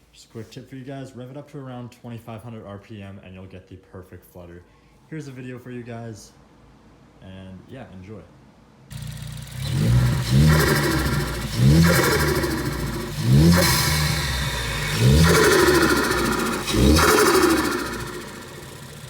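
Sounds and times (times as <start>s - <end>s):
engine revving in blips: 8.9s - 19.0s.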